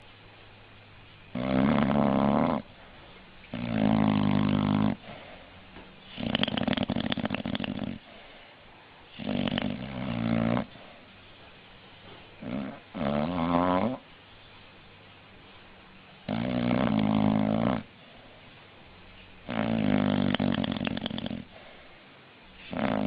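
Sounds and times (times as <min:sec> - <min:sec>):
animal snoring: 0:01.3 - 0:02.8, 0:03.5 - 0:05.4, 0:06.0 - 0:08.3, 0:09.1 - 0:11.0, 0:12.4 - 0:14.0, 0:16.2 - 0:17.9, 0:19.4 - 0:21.8, 0:22.6 - 0:23.0.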